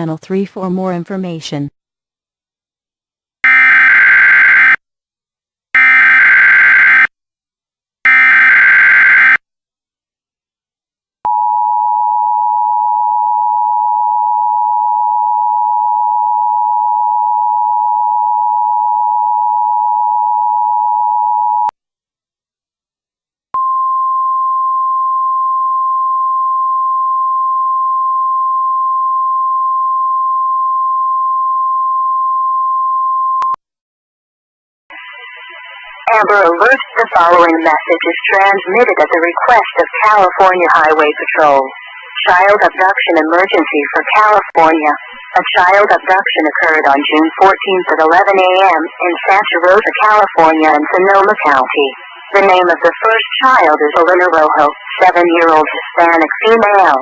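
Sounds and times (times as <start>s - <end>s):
single-pitch warning alarm tone: 3.4s - 4.8s, 5.8s - 7.1s, 8.1s - 9.4s, 11.3s - 21.7s.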